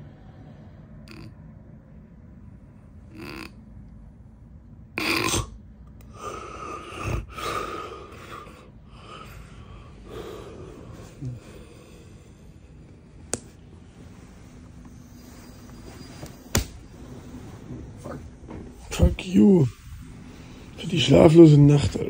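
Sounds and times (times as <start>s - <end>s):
man snoring: 6.1s - 12.8s.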